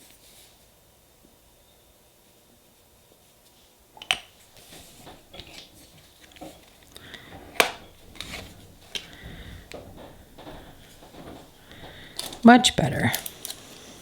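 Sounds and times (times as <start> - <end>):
tools clicking and knocking: 4.0 - 13.9
scraper scraping metal plate: 4.6 - 12.5.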